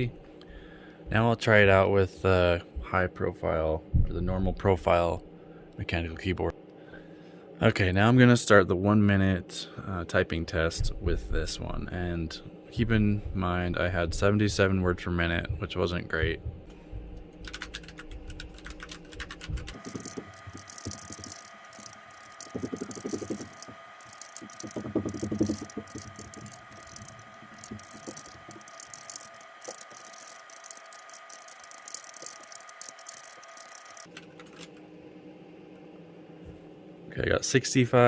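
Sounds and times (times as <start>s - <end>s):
fast typing on mechanical keyboard: 17.4s - 34.7s.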